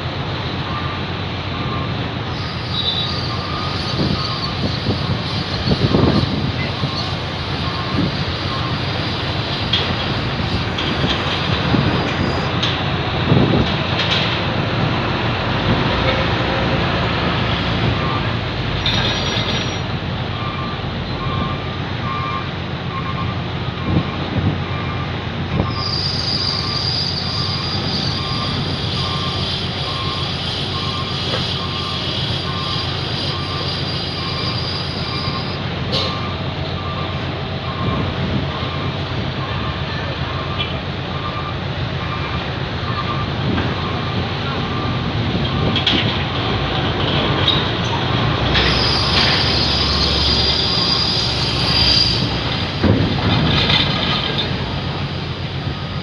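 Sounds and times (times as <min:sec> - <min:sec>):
ship engines droning: 0:00.0 - 0:56.0
ferry rumble and rushing: 0:03.4 - 0:25.8, 0:35.6 - 0:56.0
short electronic beeps: 0:18.0 - 0:45.8.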